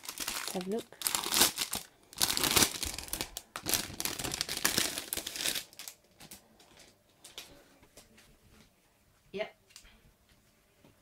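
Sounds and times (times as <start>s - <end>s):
packaging crinkling: 0.0s - 7.4s.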